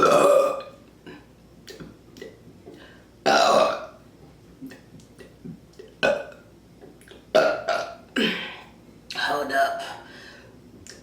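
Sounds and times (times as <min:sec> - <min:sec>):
woman burping: 0:00.0 - 0:02.4, 0:03.2 - 0:04.0, 0:04.7 - 0:06.4, 0:07.3 - 0:08.7.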